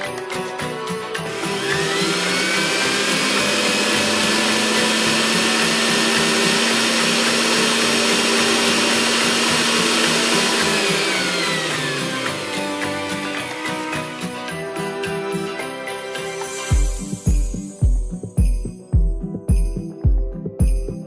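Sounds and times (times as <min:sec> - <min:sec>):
blender motor running: 0:01.1 - 0:17.7.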